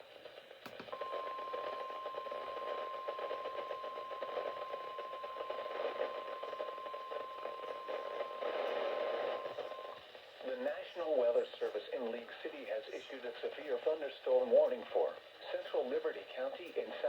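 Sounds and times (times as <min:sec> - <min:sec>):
radio static hiss: 0:00.0 - 0:17.0.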